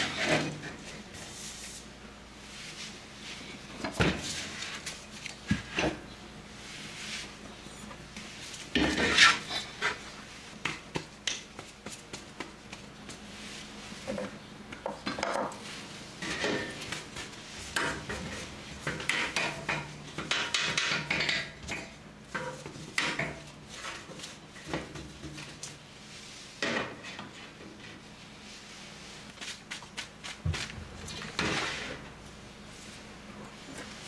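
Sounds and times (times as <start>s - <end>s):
dishes and pots clattering: 18.9s - 23.5s.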